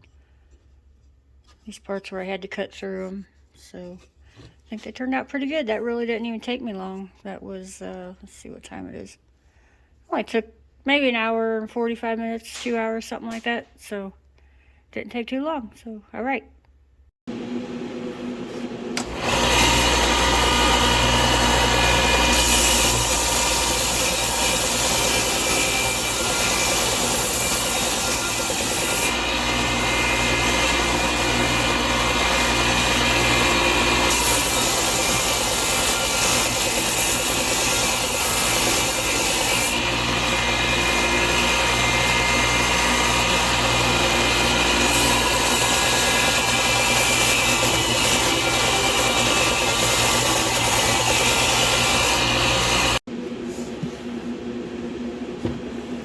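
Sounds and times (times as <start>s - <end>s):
belt sander running: 17.3s - 53.1s
wood rasping on sanding belt: 19.2s - 53.0s.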